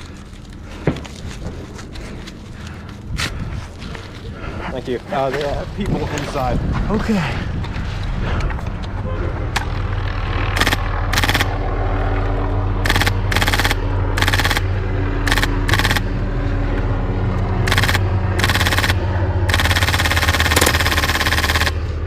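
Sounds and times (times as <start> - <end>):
airsoft gun firing bursts: 10.5 - 11.6, 12.8 - 14.7, 15.3 - 16.1, 17.7 - 21.8.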